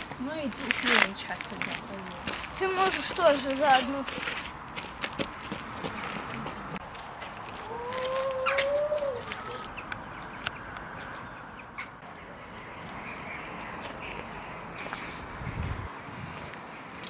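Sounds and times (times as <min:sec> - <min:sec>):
drawn-out bird call: 0:07.4 - 0:15.6.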